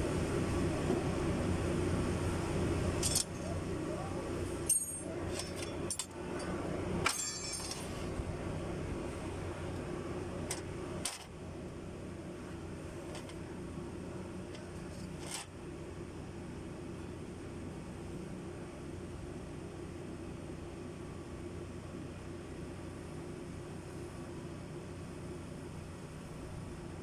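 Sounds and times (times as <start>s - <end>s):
steady low hum: 0.0s - 27.0s
metal tools clinking: 3.0s - 3.4s, 4.6s - 6.1s, 7.0s - 8.1s.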